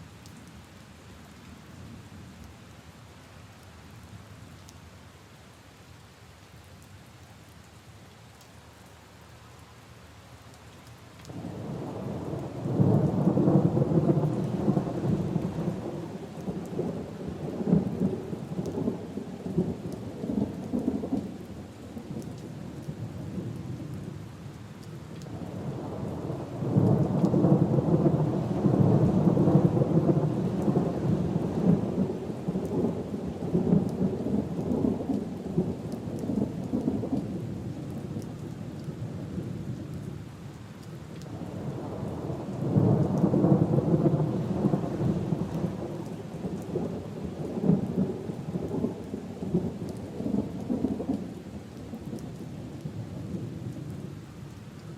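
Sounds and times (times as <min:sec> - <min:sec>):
rain on leaves and puddles: 0:00.0 - 0:54.9
thunder rumbling: 0:11.3 - 0:22.3, 0:25.4 - 0:39.8, 0:41.4 - 0:54.1.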